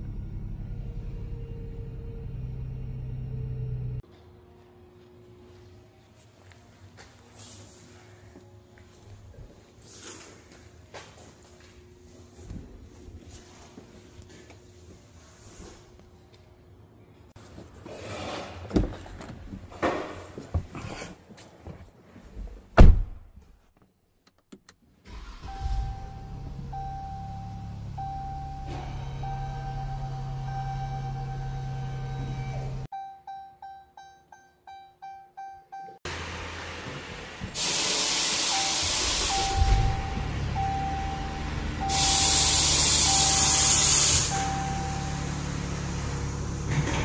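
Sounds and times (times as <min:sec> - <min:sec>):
car engine starting and idling: 0:00.0 - 0:04.0, 0:25.0 - 0:32.9, 0:35.7 - 0:47.0
loud hiss: 0:37.6 - 0:39.8, 0:41.9 - 0:44.4
thin high tone: 0:38.5 - 0:45.6.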